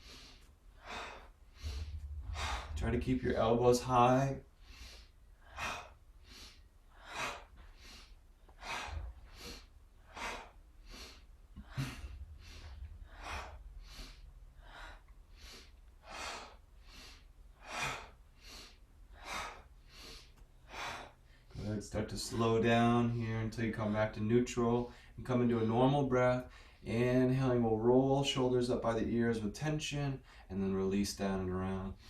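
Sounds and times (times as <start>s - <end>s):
person breathing rhythmically: 0.0s - 23.5s, 24.8s - 26.9s.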